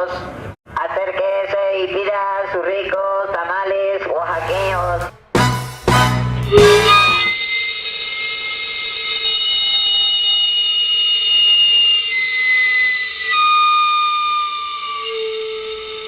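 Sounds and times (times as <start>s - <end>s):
shrill multi-tone whistle: 6.4s - 16.0s.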